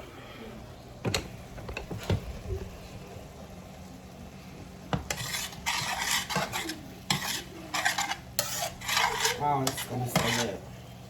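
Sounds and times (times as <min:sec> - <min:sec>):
spoon scraping in a pot: 0:05.0 - 0:10.7.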